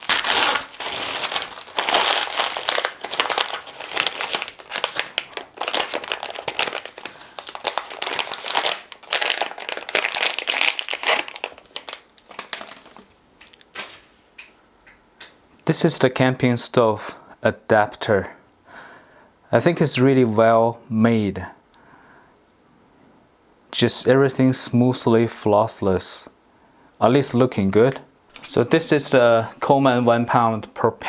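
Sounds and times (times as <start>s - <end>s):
packaging crinkling: 0.0s - 14.1s.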